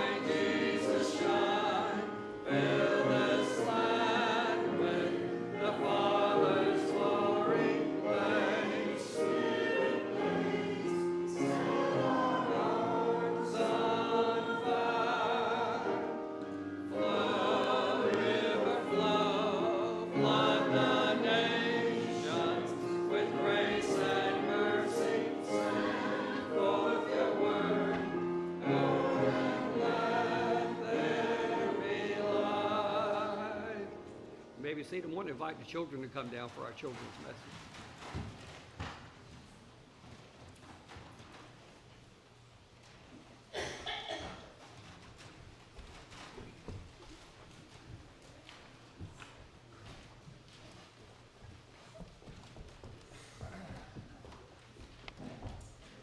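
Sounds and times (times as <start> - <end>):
choir singing a hymn: 0.0 - 35.8.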